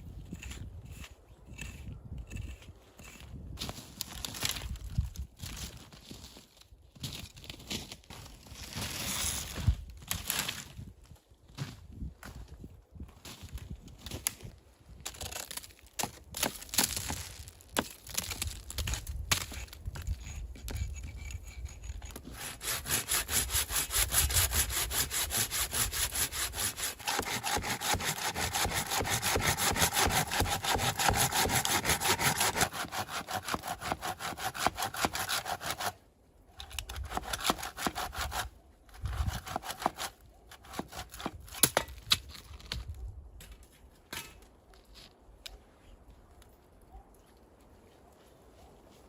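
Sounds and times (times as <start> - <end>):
hand saw cutting wood: 20.6 - 36.0, 36.6 - 41.6.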